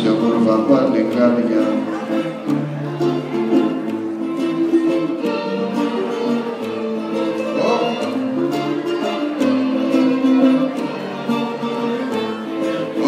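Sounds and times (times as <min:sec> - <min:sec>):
plucked string folk music: 0:00.0 - 0:13.0.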